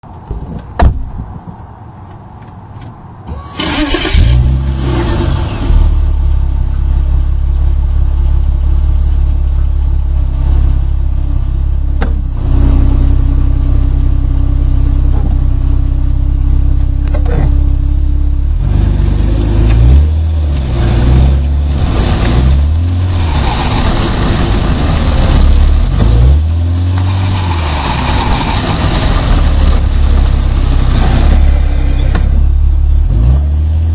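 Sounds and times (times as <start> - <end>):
car door thumping shut: 0.3 - 1.3
car engine starting and idling: 1.9 - 33.9
steady whine: 5.5 - 33.1.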